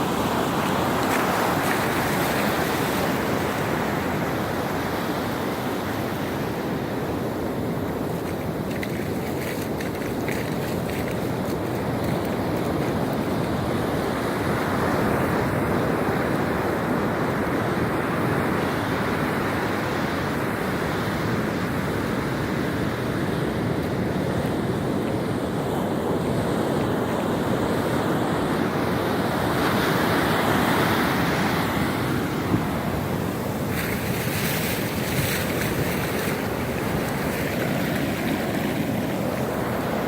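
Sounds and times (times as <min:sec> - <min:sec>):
surf breaking on a beach: 0:00.0 - 0:40.0
wind buffeting microphone: 0:31.8 - 0:40.0.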